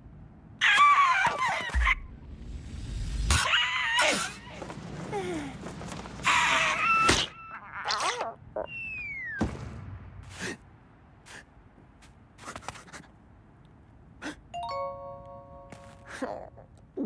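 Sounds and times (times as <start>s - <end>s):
falling whistle: 8.7s - 9.4s
thud: 9.4s - 10.5s.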